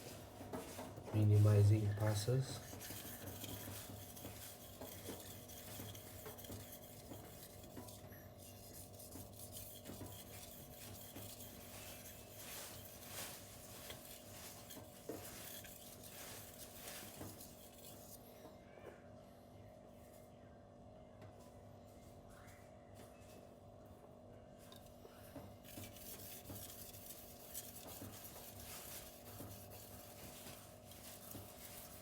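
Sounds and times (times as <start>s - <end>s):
knife scraping on whetstone: 2.5s - 18.2s, 25.6s - 32.0s.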